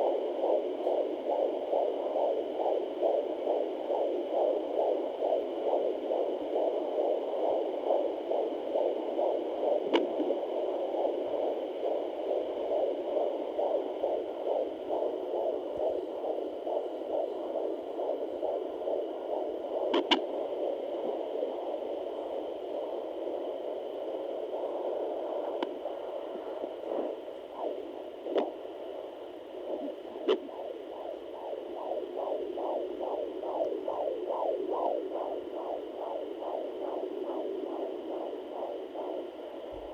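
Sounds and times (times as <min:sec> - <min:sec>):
faint steady hum: 0:00.0 - 0:39.9
fetal heartbeat whooshing pulses: 0:00.0 - 0:39.9.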